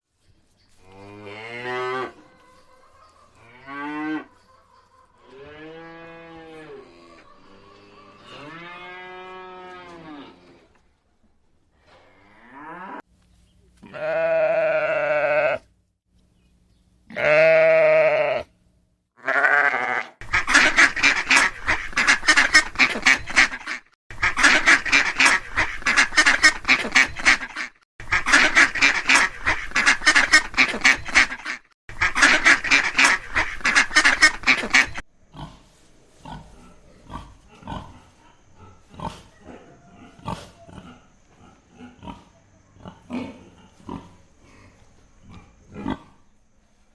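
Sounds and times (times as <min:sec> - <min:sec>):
long wavering bleats: 0:13.8 - 0:15.7, 0:17.1 - 0:18.5, 0:19.2 - 0:20.2.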